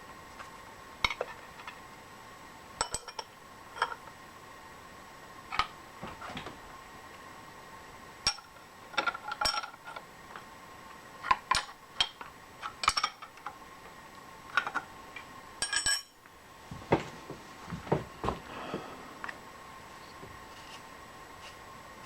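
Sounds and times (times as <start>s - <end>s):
faint steady whine: 0.0s - 22.0s
metal tools clinking: 15.6s - 16.2s.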